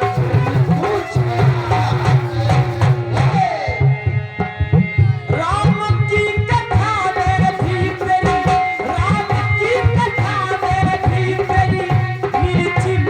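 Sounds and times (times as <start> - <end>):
hand drum beat: 0.0 - 3.6, 6.5 - 13.0.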